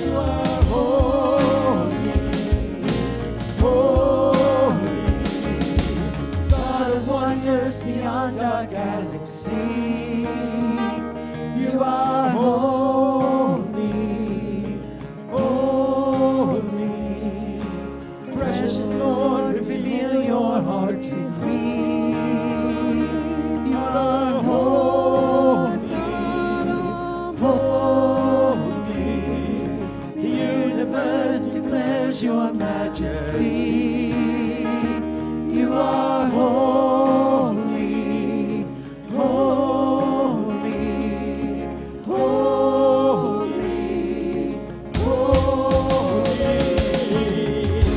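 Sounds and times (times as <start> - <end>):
bass and drums: 0.0 - 8.3, 43.8 - 47.9
band playing worship music: 0.0 - 47.9
singers with long held notes: 0.0 - 47.9.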